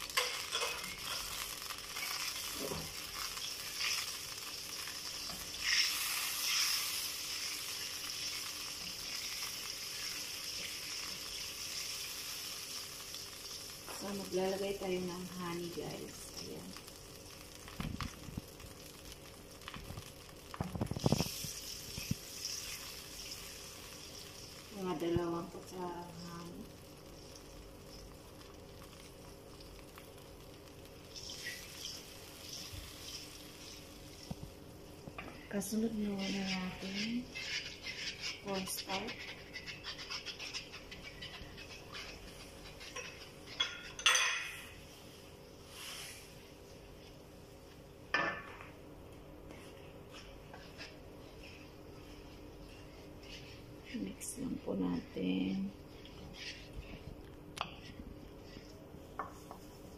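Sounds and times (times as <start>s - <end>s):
sauce bubbling and sizzling in a pan: 0.0s - 59.9s
metal utensil scraping cookware: 0.2s - 1.4s.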